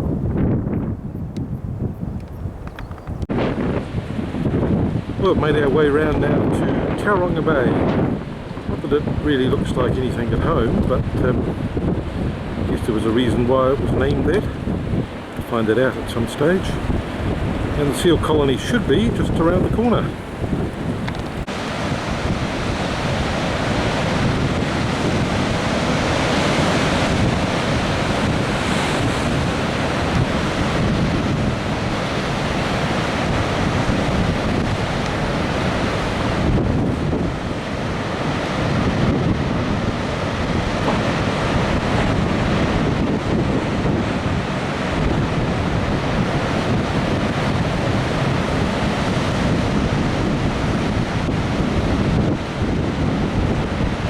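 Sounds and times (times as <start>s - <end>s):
wind buffeting microphone: 0.0s - 54.0s
ocean surf breaking: 3.2s - 54.0s.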